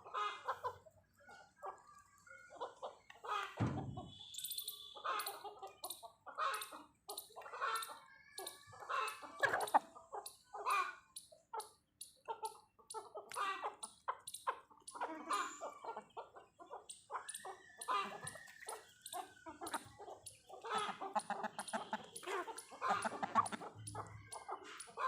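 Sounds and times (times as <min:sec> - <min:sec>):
chickens clucking: 0:00.0 - 0:25.0
chickens pecking taps: 0:17.8 - 0:25.0.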